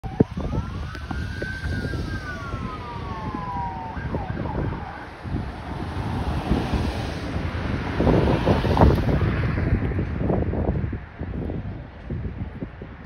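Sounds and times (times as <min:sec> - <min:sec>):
fire engine siren wailing: 0:00.0 - 0:09.6.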